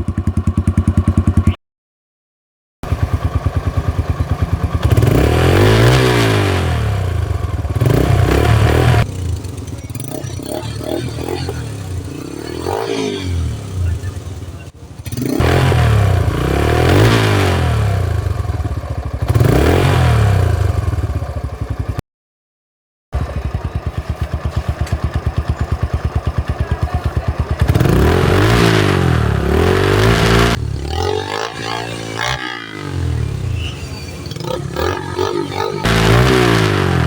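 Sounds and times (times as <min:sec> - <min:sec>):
motorcycle revving and idling: 0:00.0 - 0:01.6, 0:02.8 - 0:22.0, 0:23.2 - 0:37.0.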